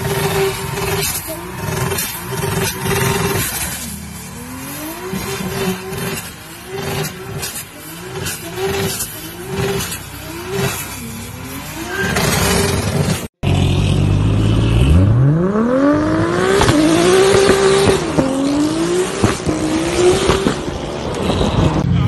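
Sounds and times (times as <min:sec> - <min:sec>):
car engine revving: 0:00.0 - 0:22.0.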